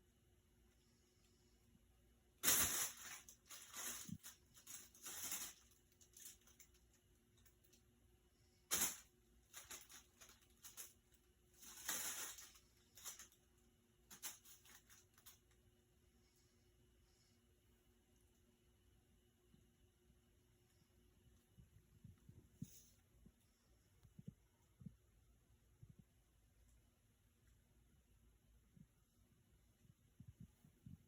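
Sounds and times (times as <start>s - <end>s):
plastic crinkling and rustling: 2.4s - 7.8s, 8.7s - 13.5s, 14.1s - 15.6s.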